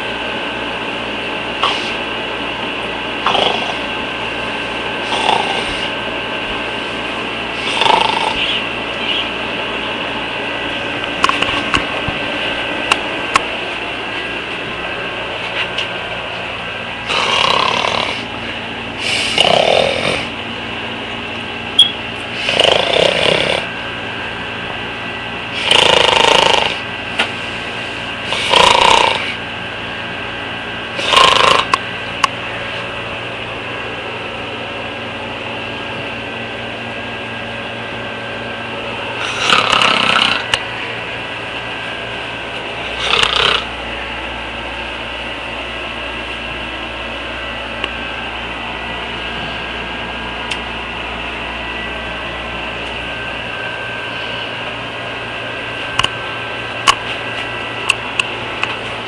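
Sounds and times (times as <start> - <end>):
steady background hum: 0.0 - 59.0
girl snoring: 3.2 - 3.9, 5.0 - 5.9, 7.6 - 8.4, 17.0 - 18.3, 19.0 - 20.3, 22.4 - 23.7, 25.6 - 26.8, 28.3 - 29.4, 31.0 - 31.8, 39.2 - 40.5, 43.0 - 43.7.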